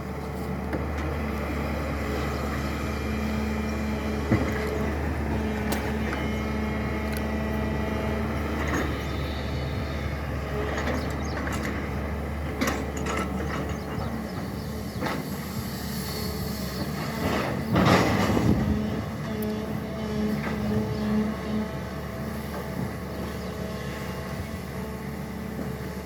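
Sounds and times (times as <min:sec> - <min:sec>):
excavator diesel engine running: 0:00.0 - 0:26.0
machine clanks and knocks: 0:10.6 - 0:14.1.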